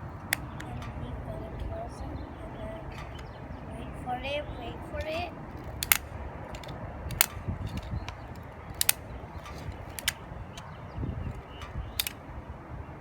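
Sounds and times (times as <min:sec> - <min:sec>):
packaging clicks and taps: 0:05.0 - 0:10.7, 0:11.6 - 0:12.2.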